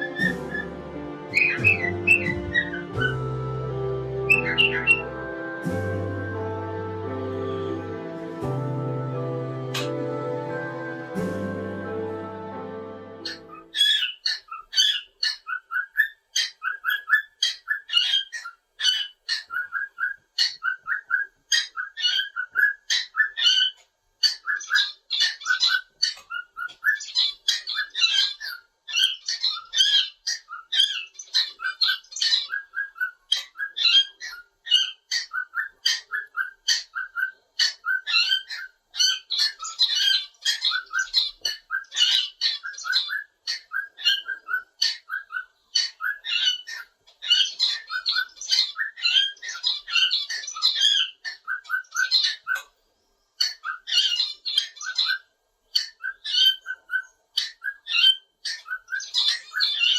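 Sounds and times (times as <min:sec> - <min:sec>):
cockatiel chirping and whistling: 0:00.0 - 0:00.7, 0:01.3 - 0:03.2, 0:04.3 - 0:05.0, 0:13.3 - 0:52.6.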